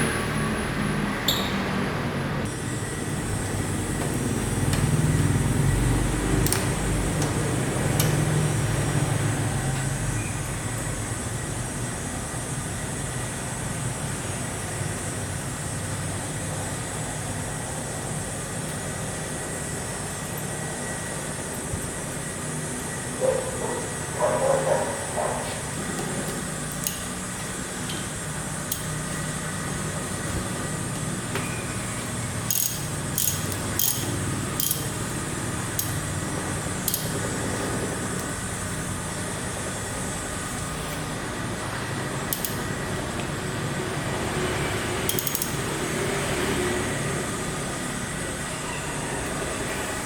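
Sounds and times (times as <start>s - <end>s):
steady background hum: 0.0s - 50.0s.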